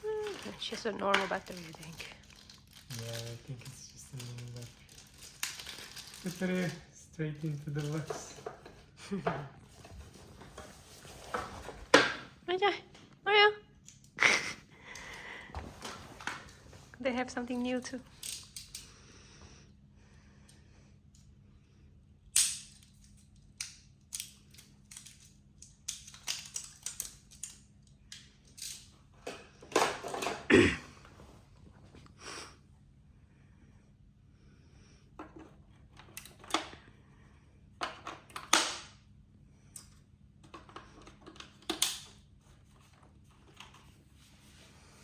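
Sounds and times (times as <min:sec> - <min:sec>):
packaging rustling: 0:00.0 - 0:06.8, 0:07.4 - 0:08.7.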